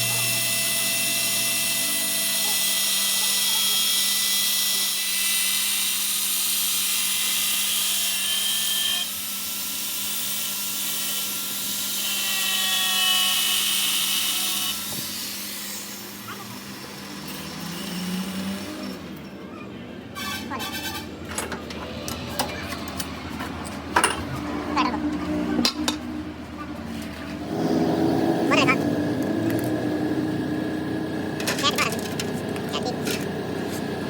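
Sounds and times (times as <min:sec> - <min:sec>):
power tool whining: 0:00.0 - 0:19.3, 0:26.9 - 0:34.0.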